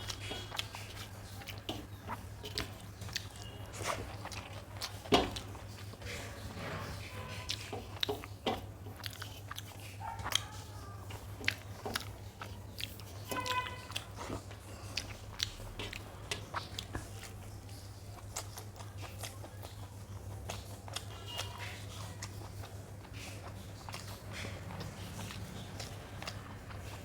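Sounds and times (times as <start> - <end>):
chewing with mouth clicks: 0.0 - 27.0.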